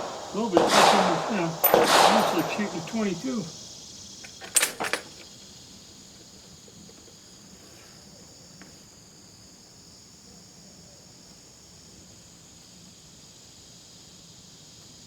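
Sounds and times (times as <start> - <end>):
sharp clicks or knocks: 4.2 - 5.2.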